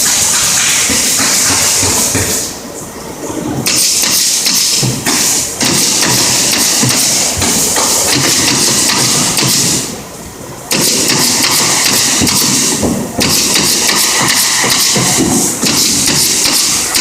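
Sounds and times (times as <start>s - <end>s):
loud air hiss: 0.0s - 2.8s, 3.6s - 10.1s, 10.7s - 17.0s
pneumatic stapler firing into wood: 3.7s - 9.9s, 10.7s - 17.0s.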